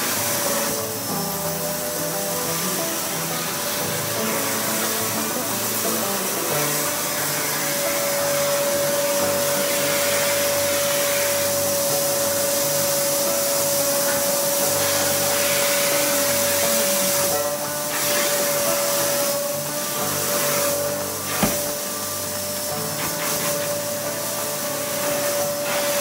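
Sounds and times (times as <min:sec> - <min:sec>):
vacuum cleaner running: 0:00.0 - 0:26.0.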